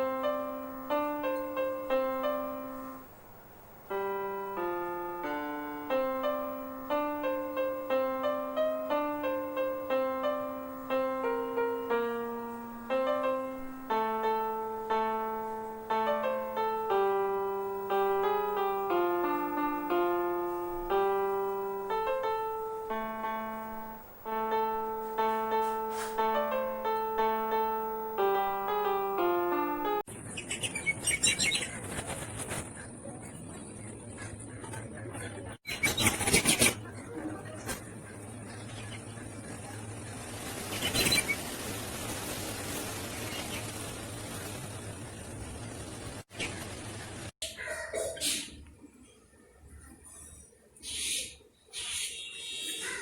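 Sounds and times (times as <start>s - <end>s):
solo piano melody: 0.0s - 30.2s, 37.1s - 47.4s.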